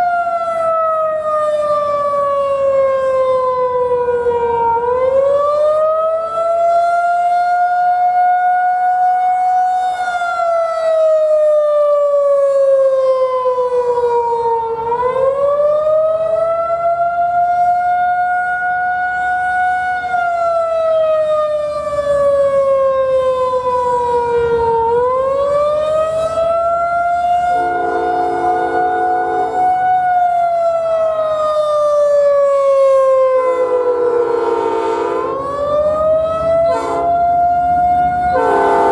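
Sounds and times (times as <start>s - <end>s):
warning siren wailing: 0.0s - 38.9s
multi-note horn blowing: 27.4s - 30.2s, 33.6s - 35.6s, 36.6s - 37.2s, 38.3s - 38.9s.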